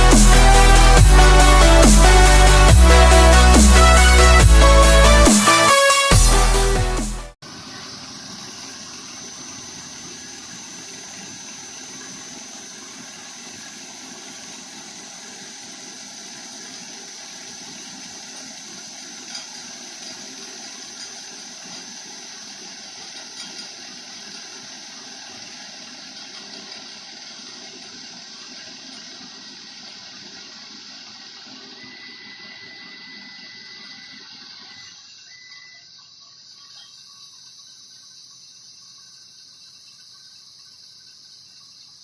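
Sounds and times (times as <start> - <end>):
machine whining: 23.1 - 35.9.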